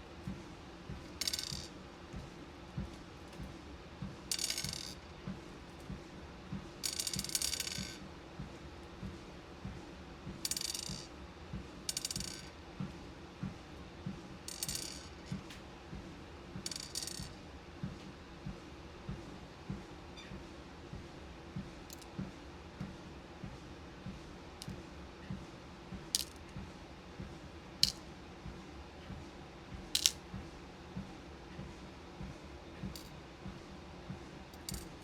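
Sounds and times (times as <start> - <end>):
constant low hum: 0.0 - 35.0
beads rattling and clattering: 1.2 - 1.7, 4.4 - 5.0, 26.2 - 26.4, 34.6 - 35.0.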